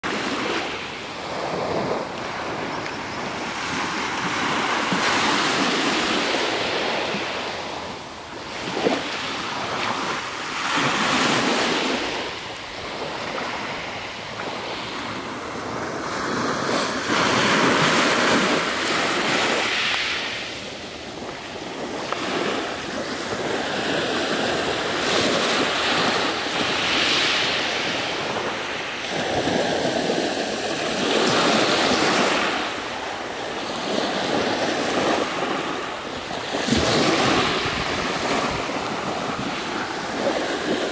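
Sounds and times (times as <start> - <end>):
waves washing over pebbles: 3.5 - 40.9.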